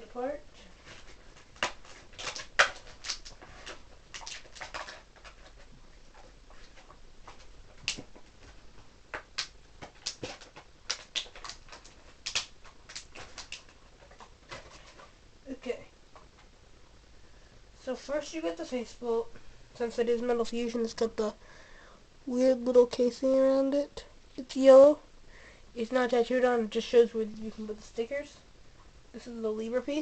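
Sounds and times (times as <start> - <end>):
plastic bag crinkling: 0.8 - 8.2, 9.2 - 15.2.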